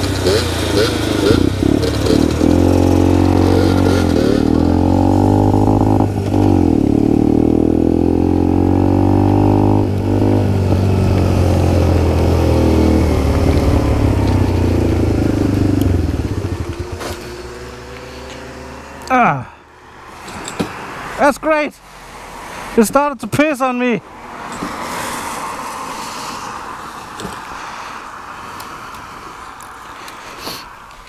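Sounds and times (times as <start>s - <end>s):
minibike engine accelerating: 0.0s - 19.0s.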